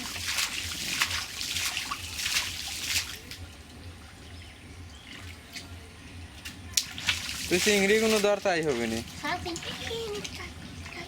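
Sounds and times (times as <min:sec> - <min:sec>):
water splashing stirred by hand: 0:00.0 - 0:04.2, 0:06.4 - 0:11.0.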